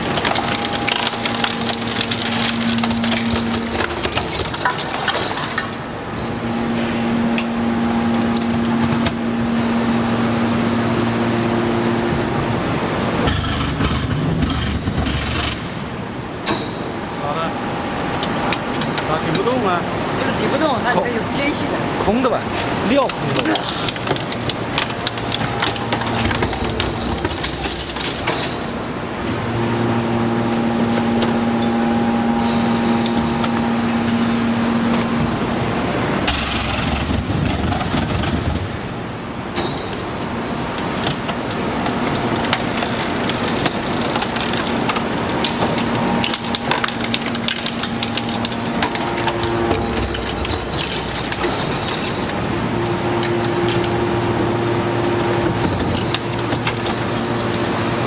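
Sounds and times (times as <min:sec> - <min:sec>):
scrap metal cracking and creaking: 0:00.0 - 0:11.2, 0:11.8 - 0:58.0
hydraulic pump whining hum: 0:00.0 - 0:20.2, 0:21.9 - 0:58.0.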